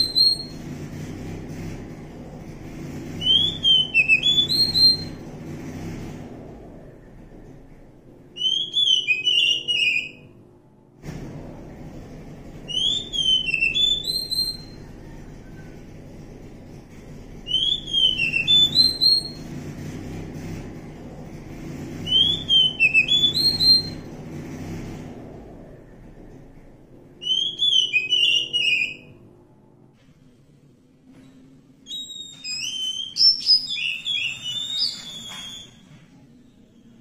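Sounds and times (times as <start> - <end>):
bird singing whistled notes: 0.0 - 0.6, 3.2 - 5.2, 8.4 - 10.3, 12.7 - 14.9, 17.4 - 19.4, 22.0 - 24.1, 27.2 - 29.1, 31.8 - 36.0
low steady hum: 0.0 - 8.8, 10.0 - 32.0.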